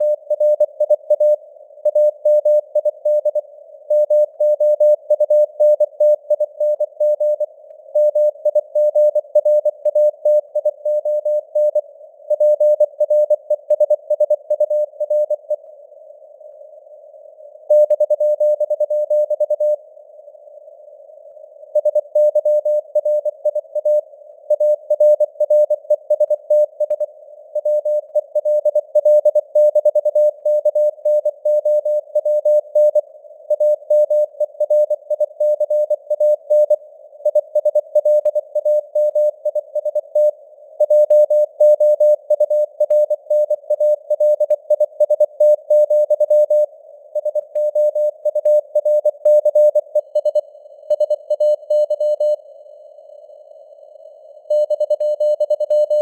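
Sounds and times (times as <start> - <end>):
morse code tone beeping: 40.8 - 52.4, 54.5 - 56.0.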